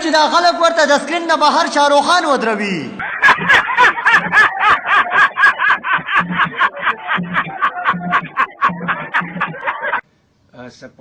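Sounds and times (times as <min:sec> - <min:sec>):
steady low beat: 0:03.3 - 0:10.0.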